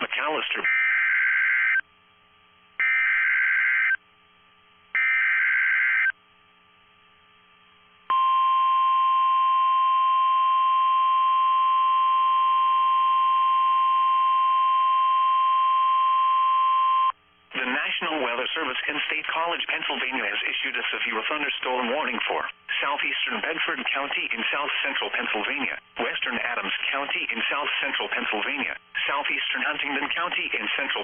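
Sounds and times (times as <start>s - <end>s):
steady warning alarm tone: 0.6s - 1.8s, 2.8s - 4.0s, 5.0s - 6.2s.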